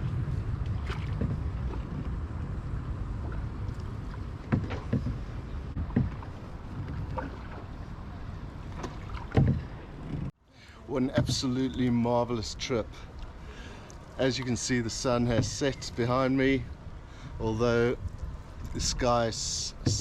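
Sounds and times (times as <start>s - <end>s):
paddle splashing in water: 0.0s - 10.3s, 19.6s - 20.0s
low rumble: 0.0s - 11.2s.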